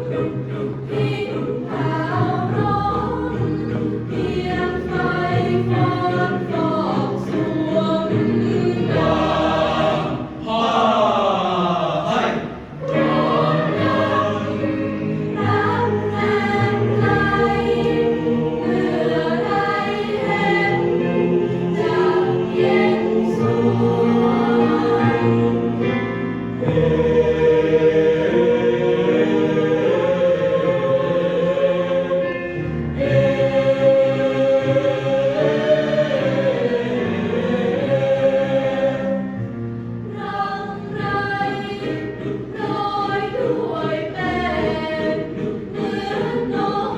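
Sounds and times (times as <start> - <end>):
choir singing in harmony: 0.0 - 46.9.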